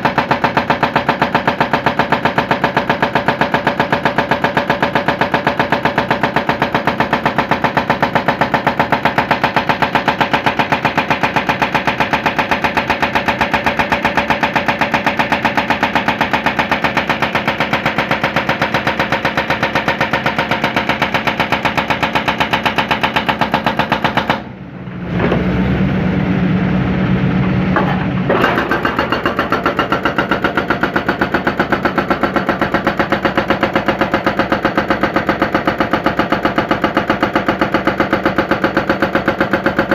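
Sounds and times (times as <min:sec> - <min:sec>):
hydraulic breaker hammer pounding concrete: 0:00.0 - 0:24.5, 0:27.7 - 0:39.9
diesel engine running: 0:24.4 - 0:39.9.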